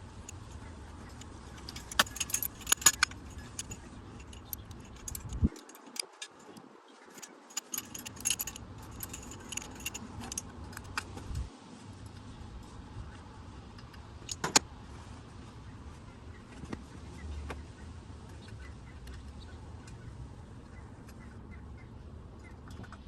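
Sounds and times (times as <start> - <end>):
metal tools clinking: 1.2 - 6.2, 7.1 - 10.4.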